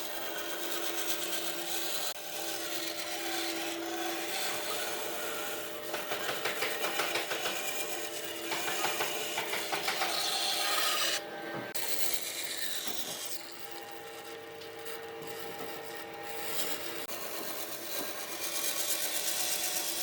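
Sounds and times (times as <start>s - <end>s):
rasp scraping wood: 2.8s - 13.4s.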